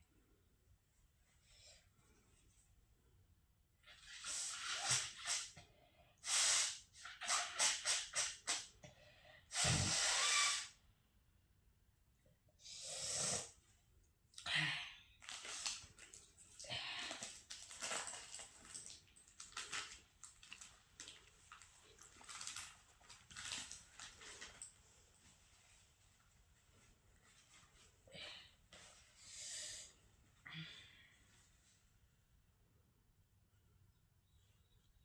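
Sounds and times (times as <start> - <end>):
person blowing nose: 4.0 - 5.6, 6.2 - 8.8, 9.5 - 10.8, 12.6 - 13.6
person sniffing: 12.7 - 13.6, 29.2 - 29.9.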